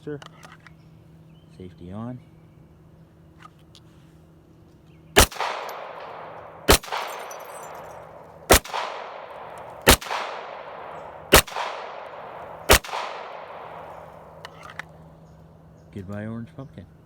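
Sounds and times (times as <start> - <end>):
pistol shots with echo: 5.2 - 14.5.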